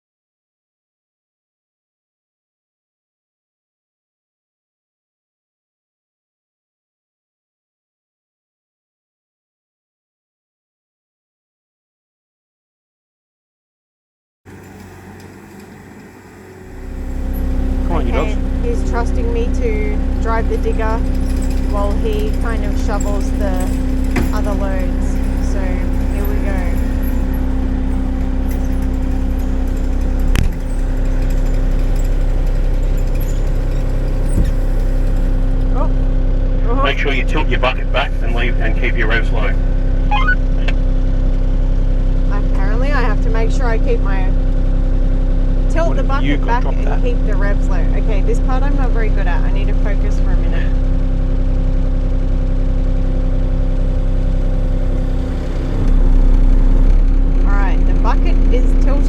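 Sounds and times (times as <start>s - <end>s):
excavator engine running: 14.5s - 59.0s.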